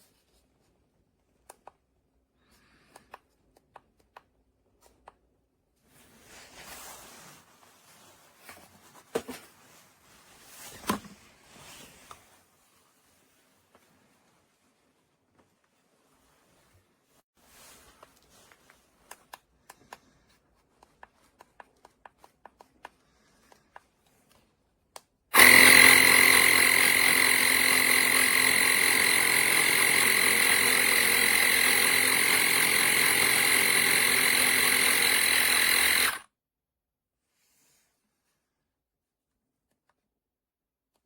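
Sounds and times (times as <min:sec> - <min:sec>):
mini compressor whining: 0:25.4 - 0:36.3.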